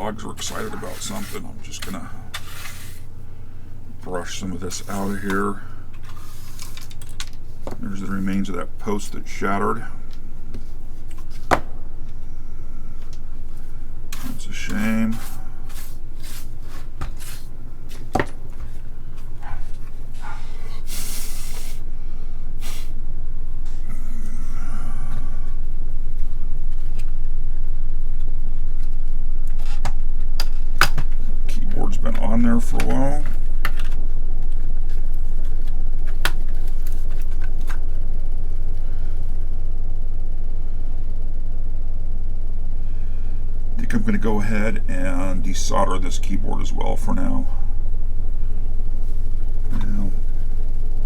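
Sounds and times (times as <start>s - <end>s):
steady low hum: 0.0s - 51.0s
brush scraping plastic case: 0.4s - 3.1s
hissing brush stroke: 19.4s - 21.9s, 22.6s - 23.0s.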